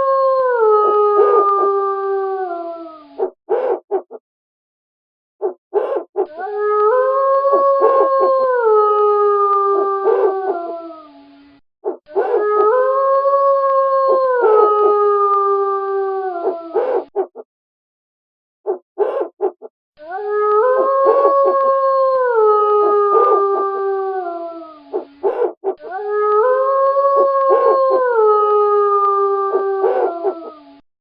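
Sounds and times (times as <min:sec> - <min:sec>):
wolf howling: 0:00.0 - 0:03.9, 0:05.4 - 0:17.4, 0:18.7 - 0:30.8
owl hooting: 0:03.2 - 0:04.2, 0:05.4 - 0:06.8, 0:11.8 - 0:12.6, 0:16.4 - 0:17.4, 0:18.7 - 0:19.6, 0:20.2 - 0:21.7, 0:24.8 - 0:26.0, 0:29.5 - 0:30.6
wolf yips: 0:03.2 - 0:04.2, 0:05.4 - 0:06.5, 0:10.1 - 0:10.5, 0:11.8 - 0:12.5, 0:16.4 - 0:17.4, 0:18.7 - 0:19.7, 0:20.7 - 0:21.6, 0:24.9 - 0:26.0, 0:29.8 - 0:30.6.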